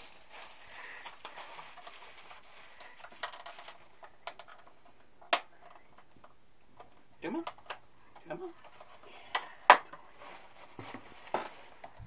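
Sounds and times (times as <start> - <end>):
packaging rustling: 0.0 - 4.9, 8.6 - 12.0.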